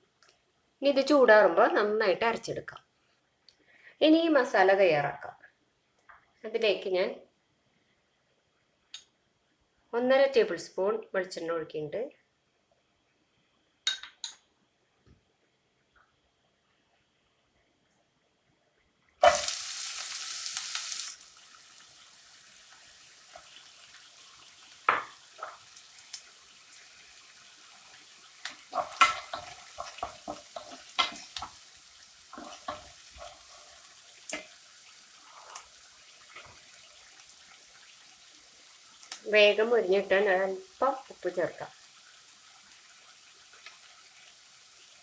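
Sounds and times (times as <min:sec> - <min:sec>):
onion sizzling in hot oil: 0:19.2 - 0:45.0
spoon stirring in a pan: 0:24.9 - 0:26.3, 0:27.7 - 0:37.9.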